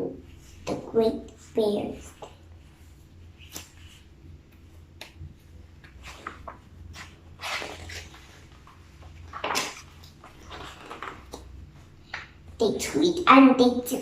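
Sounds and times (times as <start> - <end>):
low steady hum: 0.0 - 14.0
book pages turning: 2.0 - 12.4.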